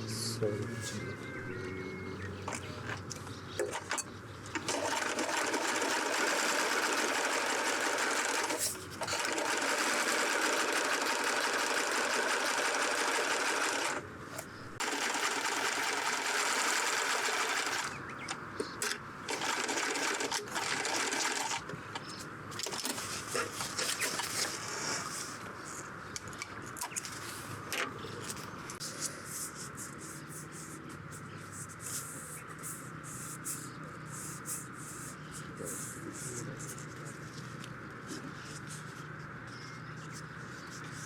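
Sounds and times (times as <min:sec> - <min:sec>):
electric sewing machine stitching: 0:04.6 - 0:14.0, 0:14.8 - 0:18.0, 0:18.8 - 0:21.6.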